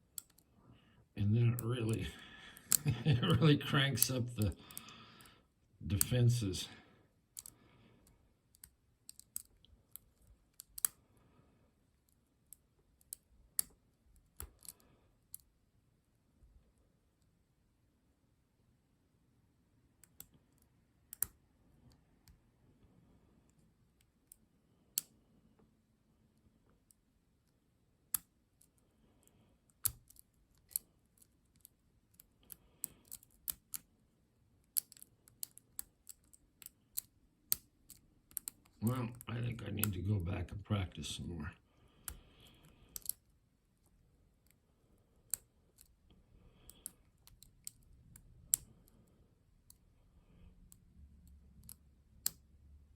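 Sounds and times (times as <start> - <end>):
lock pick clicking in lock: 8.5 - 11.0, 20.0 - 21.4, 29.8 - 33.8, 34.6 - 38.8, 42.9 - 43.2, 46.7 - 48.7, 50.7 - 52.4
lock pick clicks: 34.6 - 38.8, 42.9 - 43.2.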